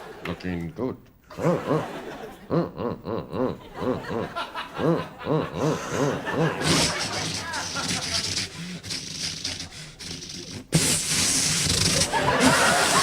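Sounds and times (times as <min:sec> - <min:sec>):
man making laugh-like vocal syllables: 0:00.2 - 0:08.7.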